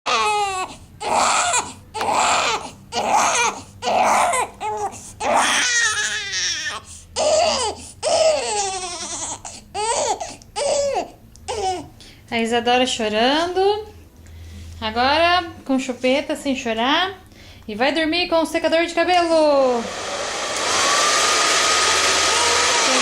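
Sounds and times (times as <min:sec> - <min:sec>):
baby crying: 0:00.1 - 0:11.9, 0:21.9 - 0:23.0.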